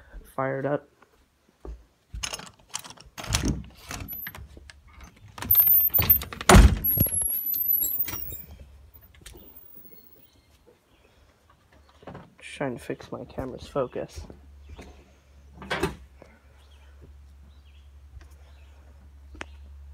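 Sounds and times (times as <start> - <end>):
clatter of knocks and rattles: 2.2 - 8.5
thin high squeal: 6.9 - 8.5.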